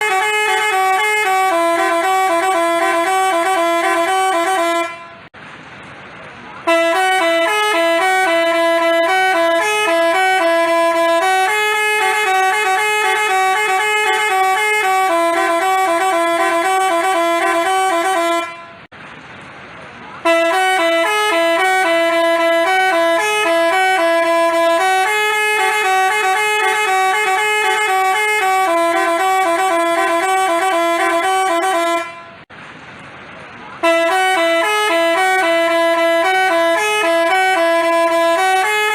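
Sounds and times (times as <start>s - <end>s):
multi-tone bus horn melody: 0.0s - 5.4s, 6.6s - 18.9s, 20.2s - 32.5s, 33.8s - 38.9s.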